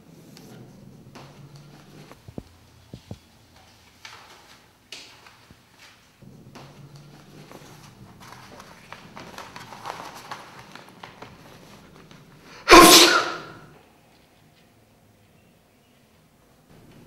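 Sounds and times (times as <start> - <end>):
rustling: 7.0 - 12.5
person sneezing: 12.5 - 13.7.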